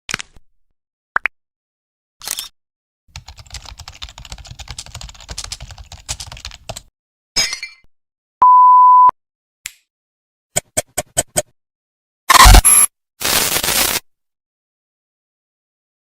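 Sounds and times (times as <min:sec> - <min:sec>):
loud steady beep: 0:08.4 - 0:09.1, 0:12.3 - 0:12.9.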